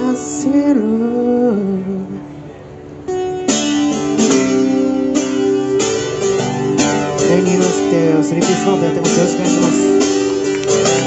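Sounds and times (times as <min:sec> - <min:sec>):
guitar chords strummed: 0:00.0 - 0:11.0.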